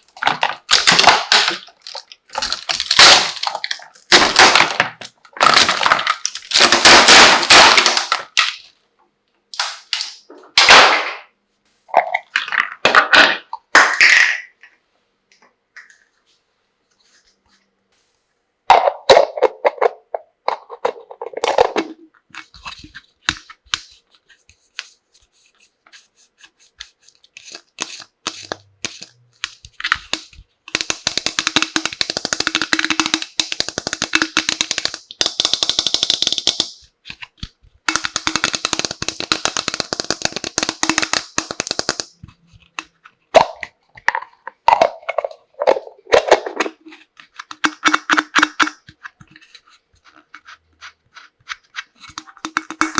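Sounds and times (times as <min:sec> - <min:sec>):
plastic pieces clicking: 0:00.0 - 0:08.6, 0:26.8 - 0:52.9
packaging crackling: 0:00.6 - 0:04.8.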